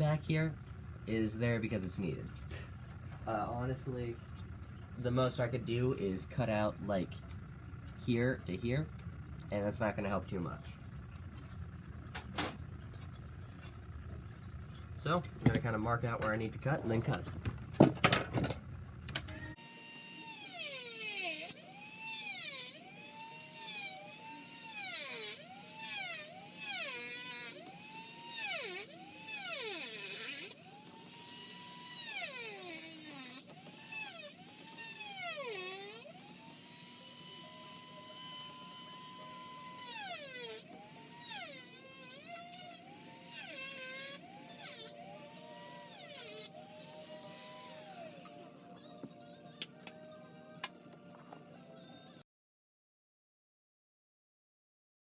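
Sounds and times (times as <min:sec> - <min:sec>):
rotary tool cutting plastic: 0:19.5 - 0:48.6.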